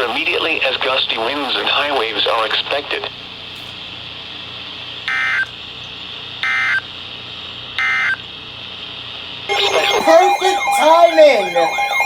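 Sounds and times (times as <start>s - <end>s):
radio hiss: 0.0s - 3.5s
raspy digital bursts: 9.5s - 12.0s.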